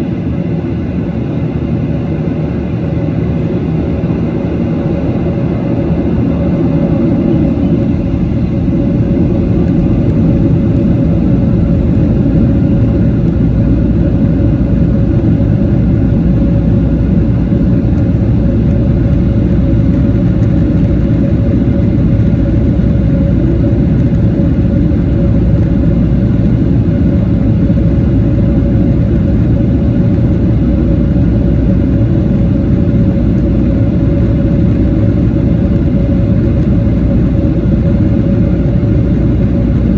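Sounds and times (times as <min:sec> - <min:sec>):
airplane cabin engine rumble: 0:00.0 - 0:39.9.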